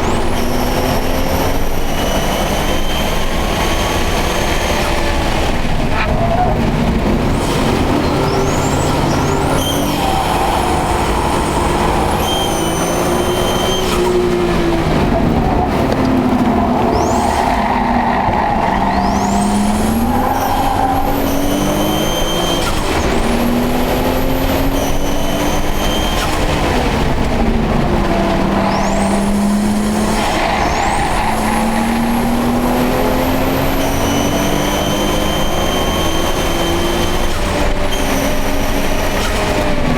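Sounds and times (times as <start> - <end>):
car engine revving hard: 0.0 - 39.9
high-pitched whine: 16.4 - 26.4.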